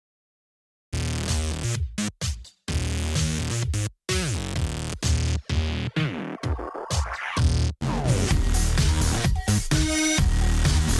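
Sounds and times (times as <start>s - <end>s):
electronic synthesizer music: 2.7s - 10.9s.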